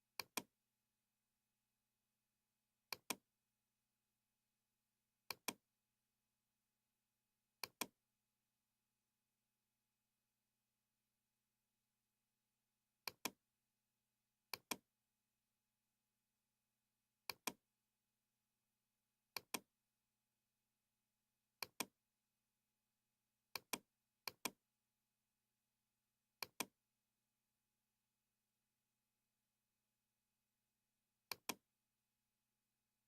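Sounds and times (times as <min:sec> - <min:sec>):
mouse button clicks: 0:00.1 - 0:00.5, 0:02.9 - 0:03.2, 0:05.3 - 0:05.6, 0:07.6 - 0:08.0, 0:13.0 - 0:13.4, 0:14.5 - 0:14.8, 0:17.2 - 0:17.6, 0:19.3 - 0:19.7, 0:21.6 - 0:21.9, 0:23.5 - 0:24.6, 0:26.4 - 0:26.8, 0:31.3 - 0:31.6.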